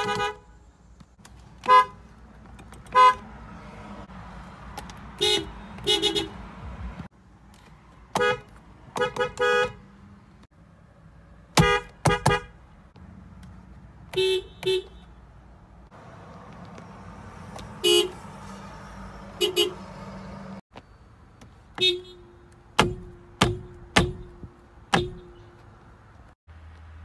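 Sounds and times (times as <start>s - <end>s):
car horns tooting: 0.0s - 0.6s, 1.6s - 2.1s, 2.7s - 3.4s, 5.2s - 6.5s, 8.1s - 9.9s, 11.5s - 12.6s, 14.1s - 15.2s, 17.6s - 18.4s, 19.3s - 20.5s, 21.8s - 25.6s
traffic rumble: 0.0s - 27.0s.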